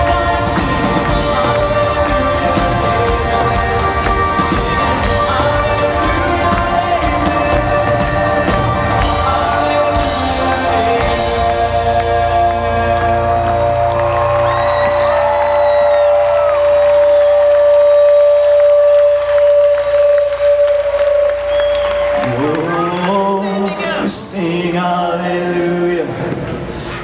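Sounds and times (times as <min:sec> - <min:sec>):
rock band playing: 0:00.0 - 0:24.0
crowd cheering: 0:00.0 - 0:24.5
drums: 0:00.0 - 0:27.0.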